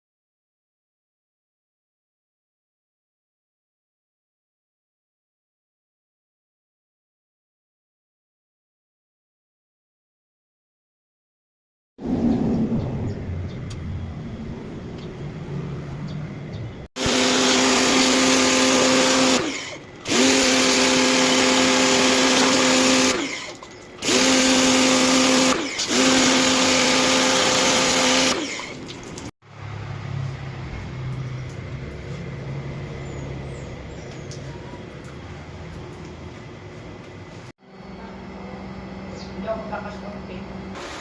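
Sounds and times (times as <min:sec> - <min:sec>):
cleaning machine motor hum: 0:17.0 - 0:41.0.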